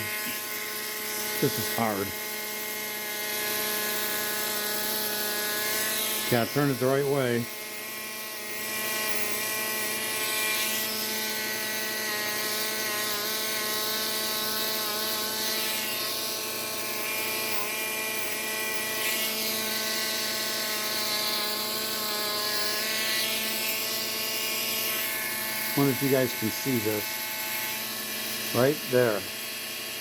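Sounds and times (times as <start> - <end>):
belt sharpener running: 0.0 - 30.0.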